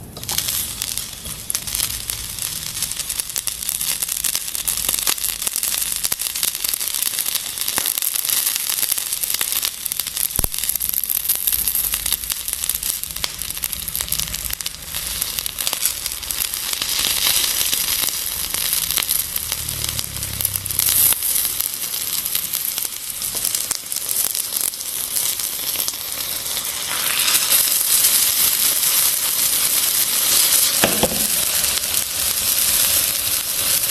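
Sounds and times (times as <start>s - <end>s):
fire sizzling and crackling: 0.0s - 33.9s.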